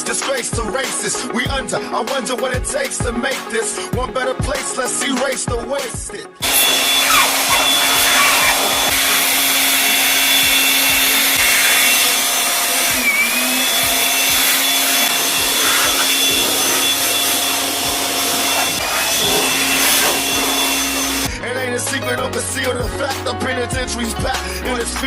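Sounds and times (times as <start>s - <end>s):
electric motor whirring: 6.4s - 21.3s.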